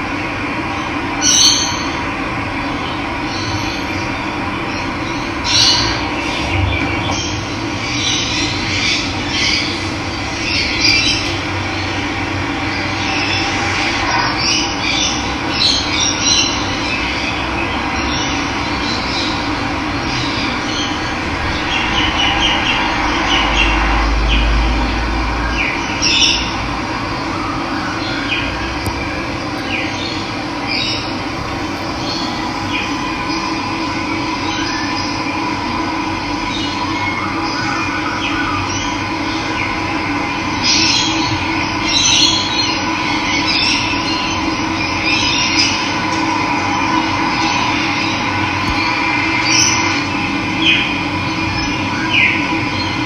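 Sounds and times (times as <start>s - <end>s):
wild birds calling: 3.3s - 35.3s
low rumble: 5.2s - 15.4s, 17.3s - 27.6s, 28.4s - 36.5s.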